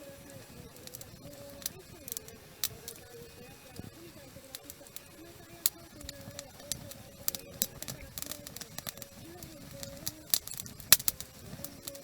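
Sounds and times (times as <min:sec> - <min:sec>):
soft background music: 0:00.0 - 0:12.0
wood fire crackling and popping: 0:00.0 - 0:12.0.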